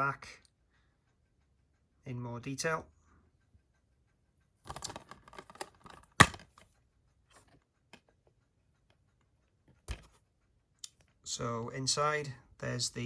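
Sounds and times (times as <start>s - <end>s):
plastic case crackling and clicking: 4.7s - 6.6s
plastic case snapping: 4.7s - 6.6s.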